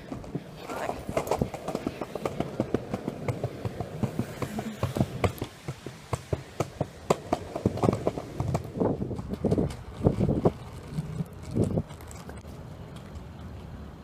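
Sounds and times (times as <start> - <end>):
plastic wheels rolling on pavement: 0.0 - 14.0.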